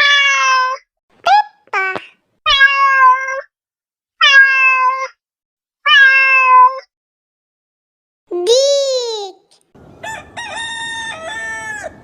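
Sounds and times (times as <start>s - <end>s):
cat meowing: 2.5s - 3.5s, 4.2s - 5.1s, 5.9s - 6.9s.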